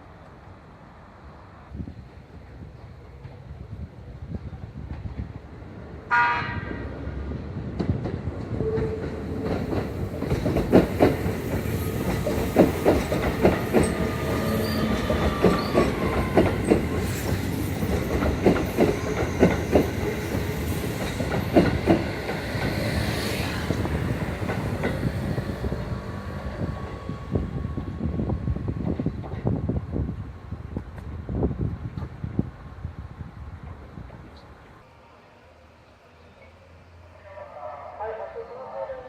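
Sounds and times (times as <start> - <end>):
train wheels clacking: 7.8 - 26.0.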